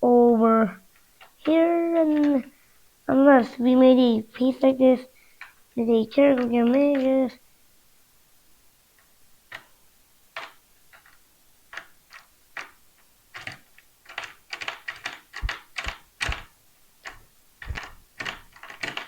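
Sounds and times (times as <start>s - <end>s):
plastic pieces clicking and clattering: 13.4s - 19.0s.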